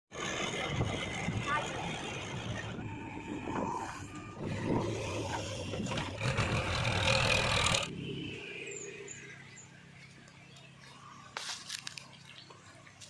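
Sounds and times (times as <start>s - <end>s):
loud mechanical noise: 0.1s - 10.1s
heavy machinery diesel engine: 0.1s - 10.2s.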